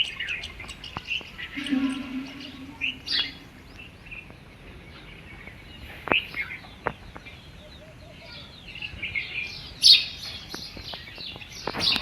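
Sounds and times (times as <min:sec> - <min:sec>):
birds chirping and twittering: 0:00.0 - 0:12.0
sharp loud bird call: 0:01.4 - 0:03.7.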